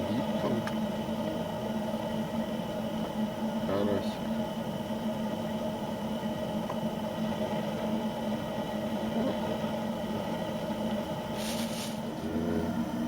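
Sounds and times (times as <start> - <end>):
mechanical hum: 0.0 - 13.0
short hiss: 11.4 - 12.0.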